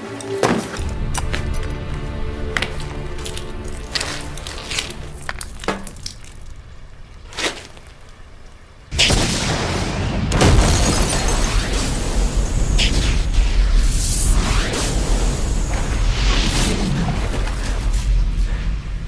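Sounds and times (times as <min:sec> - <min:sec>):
sharp cracks and breaking: 0:00.8 - 0:15.0
loud explosion roaring: 0:08.9 - 0:19.0.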